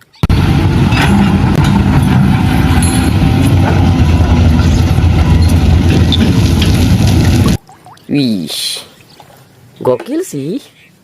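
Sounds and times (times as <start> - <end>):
excavator engine running: 0.2 - 7.6.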